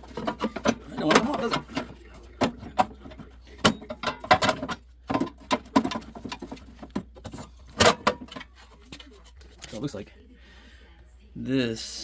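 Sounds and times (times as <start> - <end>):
clicks and knocks of engine shroud: 0.0 - 9.1.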